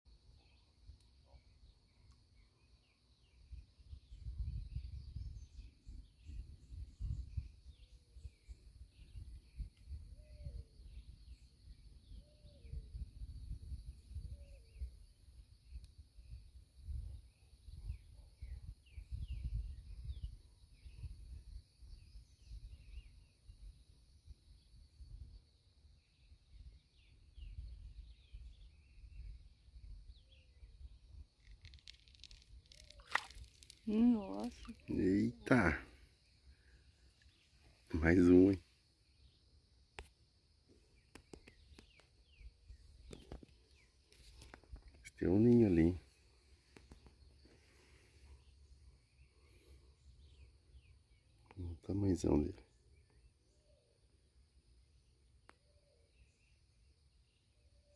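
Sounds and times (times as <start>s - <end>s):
small birds chirping: 0.1s - 57.9s
wind buffeting microphone: 4.0s - 8.3s, 17.9s - 20.3s.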